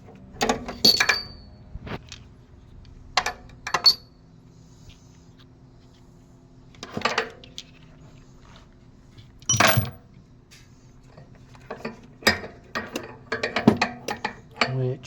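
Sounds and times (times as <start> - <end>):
steel sockets clinking: 0.4 - 1.5.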